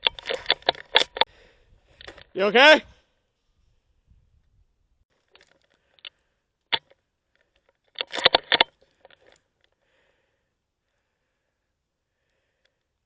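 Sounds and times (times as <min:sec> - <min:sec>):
sharp clicks and rattles: 0:00.0 - 0:01.3, 0:05.2 - 0:09.8.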